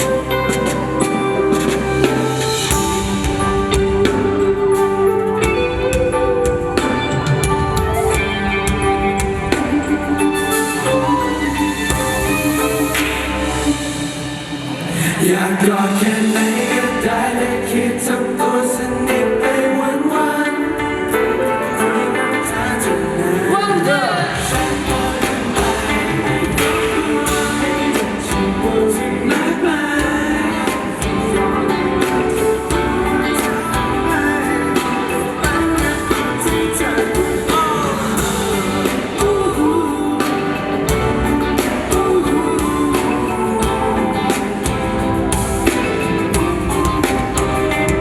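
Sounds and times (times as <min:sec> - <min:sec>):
live pop band with singing: 0:00.0 - 0:48.0.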